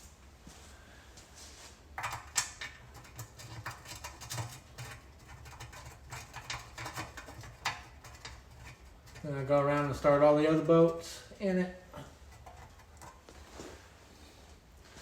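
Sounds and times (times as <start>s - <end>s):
faint low hum: 0.0s - 15.0s
small metallic clicks and rattles: 2.0s - 10.1s.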